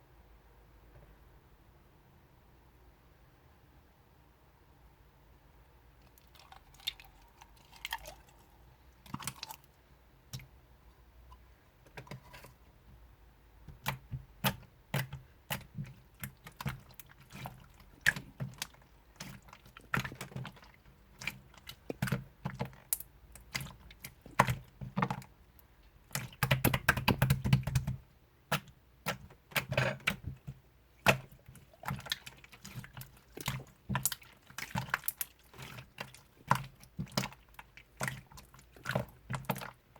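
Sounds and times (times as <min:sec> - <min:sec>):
slime squished by hand: 0:13.7 - 0:25.3, 0:26.1 - 0:39.8.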